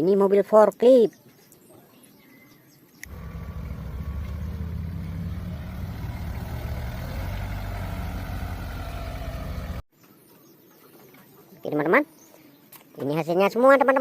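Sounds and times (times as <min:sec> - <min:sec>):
engine idling: 0:03.1 - 0:09.8.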